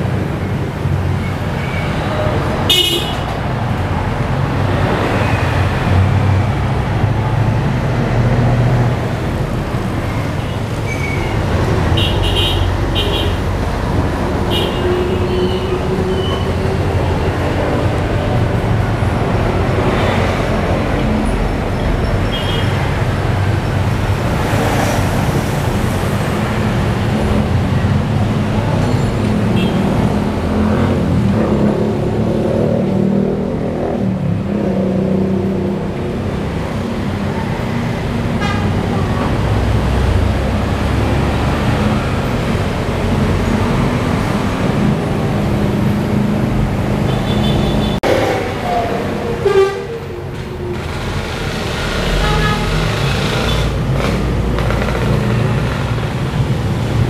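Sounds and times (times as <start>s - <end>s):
vehicle engines rumbling: 0.0s - 57.0s
car horns tooting: 2.7s - 3.4s, 11.9s - 13.4s, 49.4s - 50.2s, 52.0s - 53.8s.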